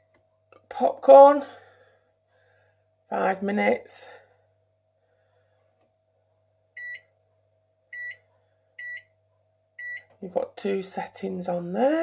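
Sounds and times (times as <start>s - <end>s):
microwave keypad beeps: 6.8s - 7.1s, 8.0s - 8.2s, 8.8s - 9.1s, 9.8s - 10.1s.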